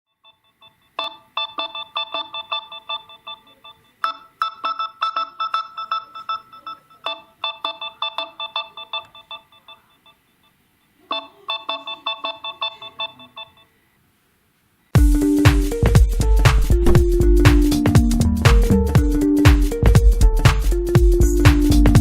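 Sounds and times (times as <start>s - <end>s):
electronic phone ringtone: 0.1s - 13.8s.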